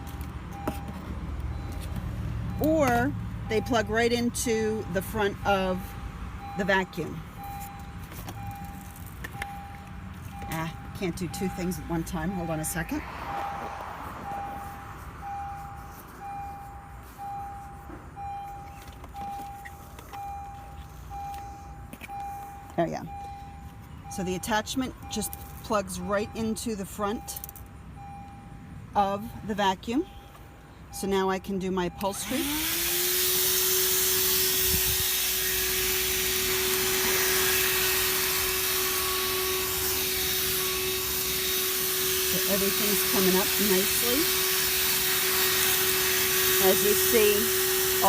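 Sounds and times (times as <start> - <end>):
car warning chime beeping: 0.0 - 32.6, 36.0 - 48.0
handheld vacuum running: 32.2 - 48.0.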